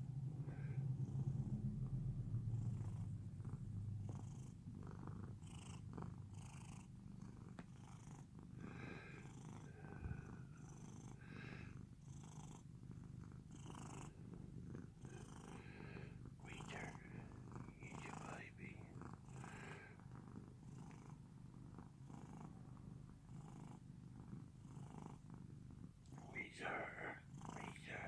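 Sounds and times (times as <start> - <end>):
cat purring: 0.0 - 28.0.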